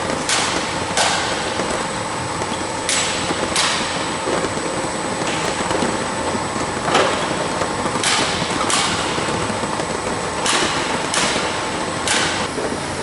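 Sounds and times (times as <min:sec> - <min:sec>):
grading machine running: 0:00.0 - 0:13.0.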